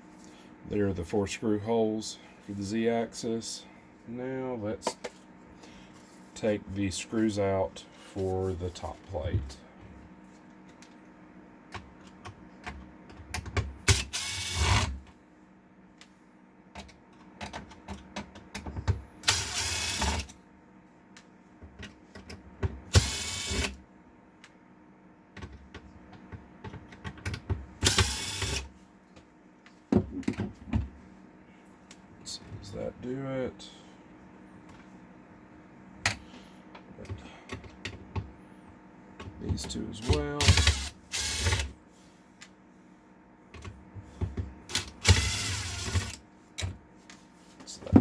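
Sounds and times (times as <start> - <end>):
power screwdriver running: 13.9 - 14.9, 19.2 - 20.3, 22.9 - 23.8, 27.8 - 28.7, 40.0 - 41.7, 44.7 - 46.2.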